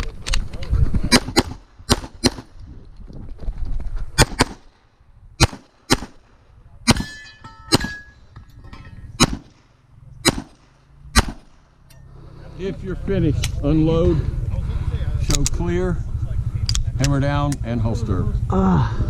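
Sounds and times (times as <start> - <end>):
pistol shots: 1.1 - 2.6, 4.2 - 4.8, 5.4 - 8.1, 9.2 - 11.8
bullet clanging on steel target: 6.9 - 9.3.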